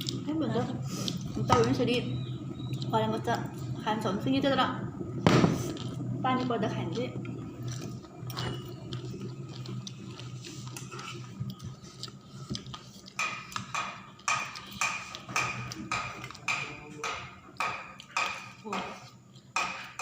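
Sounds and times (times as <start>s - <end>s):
low steady hum: 0.0s - 20.0s
crunchy chewing: 7.3s - 16.5s.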